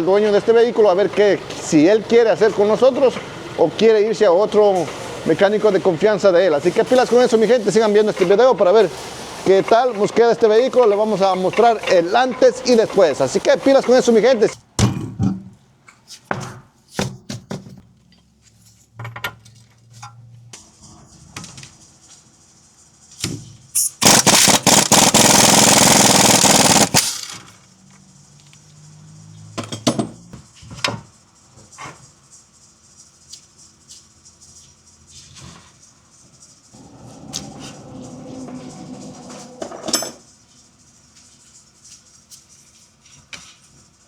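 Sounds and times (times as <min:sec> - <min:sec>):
pneumatic impact wrench hammering: 0:23.8 - 0:27.6.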